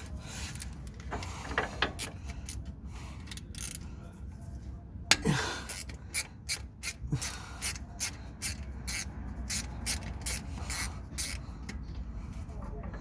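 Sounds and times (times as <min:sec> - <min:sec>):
ratchet spanner clicking: 0:00.5 - 0:03.8, 0:05.1 - 0:11.8.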